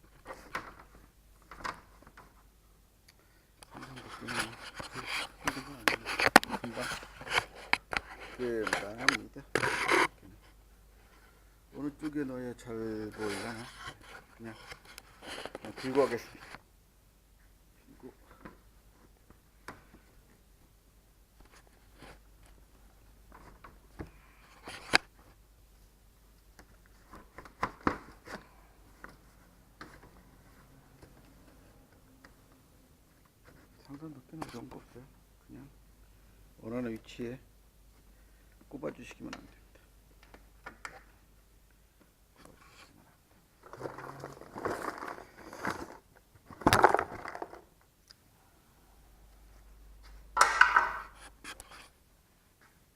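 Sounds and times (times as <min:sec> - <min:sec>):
rubber trim scraping and rubbing: 0:03.8 - 0:10.2.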